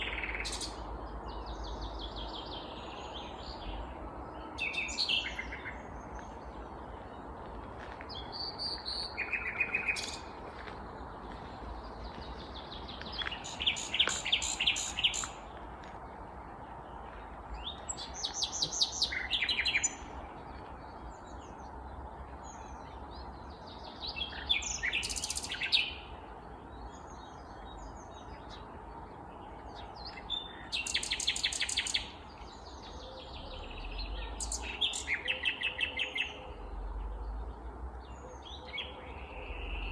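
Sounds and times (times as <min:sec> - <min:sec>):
nightingale singing: 0:04.4 - 0:07.3, 0:12.1 - 0:15.5, 0:17.5 - 0:21.6, 0:29.4 - 0:37.4.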